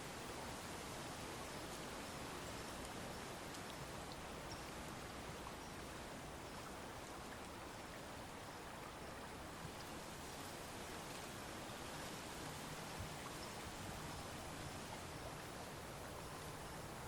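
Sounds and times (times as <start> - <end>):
woodland ambience hiss: 0.0 - 17.0
light ticks: 2.7 - 4.7, 9.7 - 10.0.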